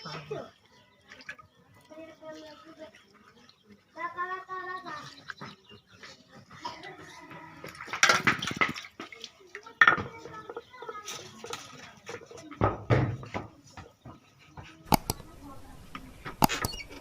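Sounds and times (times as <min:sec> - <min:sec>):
cooking pots and utensils clattering: 0:06.4 - 0:13.6.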